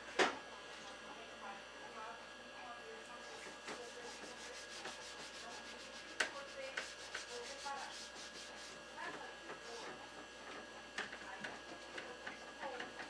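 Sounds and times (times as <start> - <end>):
scrubbing plastic with detergent: 3.5 - 8.8.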